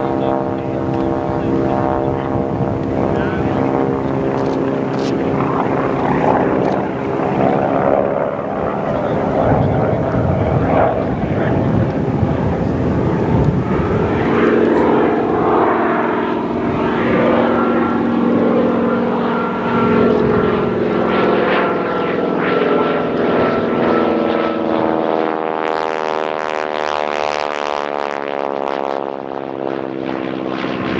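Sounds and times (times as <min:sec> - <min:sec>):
propeller plane engines droning: 0:00.0 - 0:30.9.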